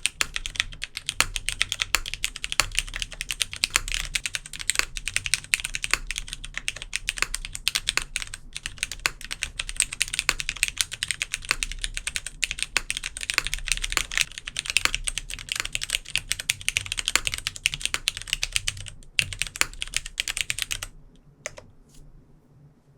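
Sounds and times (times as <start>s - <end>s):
mechanical keyboard typing: 0.0s - 21.7s.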